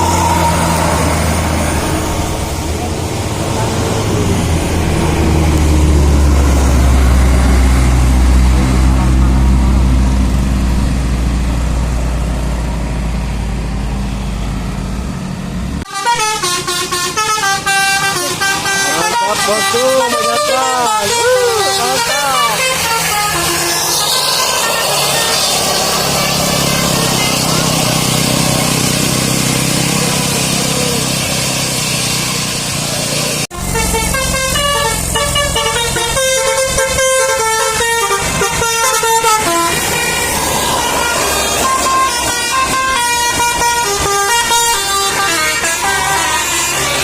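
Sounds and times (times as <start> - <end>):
bus engine rumble: 0.0 - 47.0
multi-tone bus horn tune: 15.8 - 31.0, 33.5 - 47.0.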